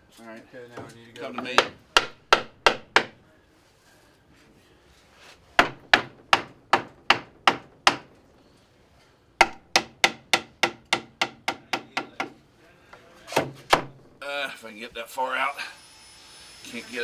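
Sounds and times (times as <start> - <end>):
hammer striking wood: 1.3 - 3.2, 5.6 - 8.2, 9.4 - 12.4.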